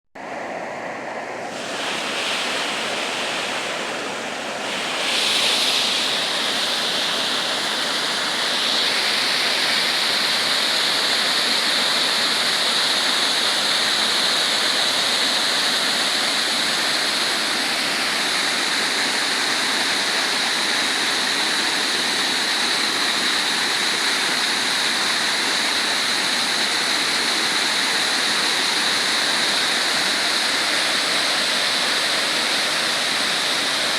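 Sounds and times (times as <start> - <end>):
waterfall rushing: 0.3 - 33.9.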